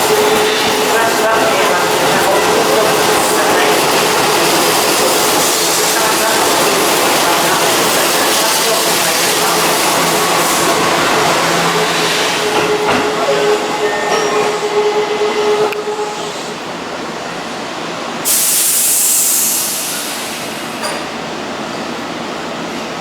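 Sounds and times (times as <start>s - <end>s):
electric train rumble: 0.0s - 23.0s
high-pitched train squeal: 8.6s - 16.6s
air hiss: 18.2s - 20.9s.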